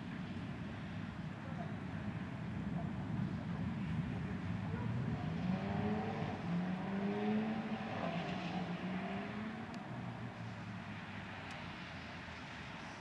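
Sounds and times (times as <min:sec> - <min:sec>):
car engine passing: 0:04.6 - 0:12.8.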